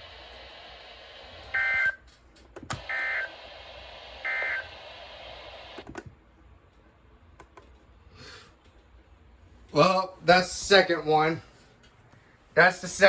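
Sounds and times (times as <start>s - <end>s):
radio hiss: 0.0s - 2.0s, 2.8s - 5.9s.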